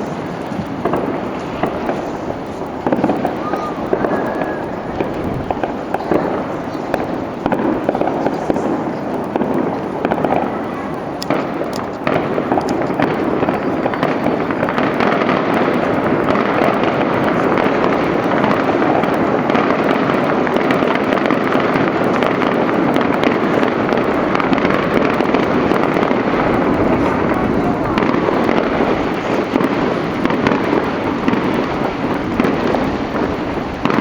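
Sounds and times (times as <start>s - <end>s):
fireworks crackling rumble: 0.0s - 34.0s
sharp firework pops: 0.0s - 34.0s.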